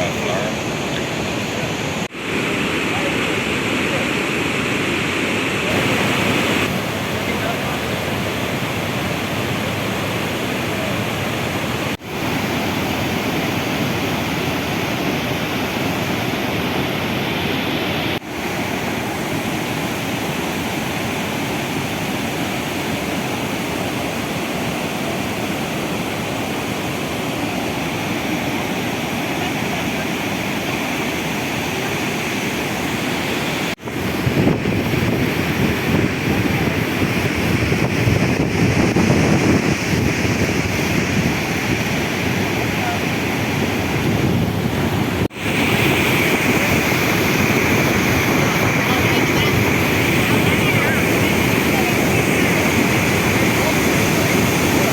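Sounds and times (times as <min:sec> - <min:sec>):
waterfall roaring: 0:00.0 - 0:54.9
wind buffeting microphone: 0:33.8 - 0:54.9.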